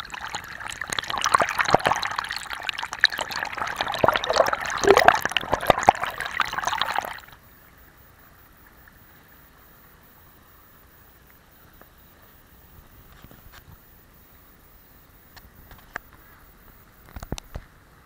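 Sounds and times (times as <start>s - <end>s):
water splashing and trickling: 0.0s - 7.4s
faint outdoor background: 0.0s - 18.0s.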